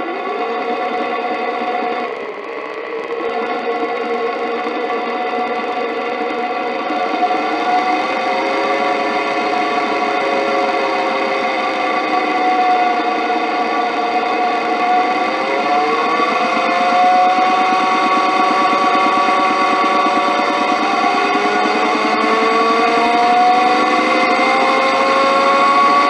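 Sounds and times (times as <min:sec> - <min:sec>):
rapid even throbbing: 0:15.3 - 0:26.0.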